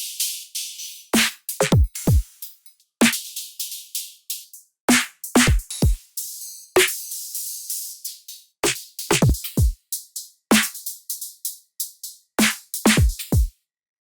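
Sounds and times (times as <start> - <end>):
snappy hi-hat and snare hits: 0.0 - 13.5
deep electronic kick drums: 1.7 - 2.2, 5.4 - 6.0, 9.2 - 9.8, 12.9 - 13.5.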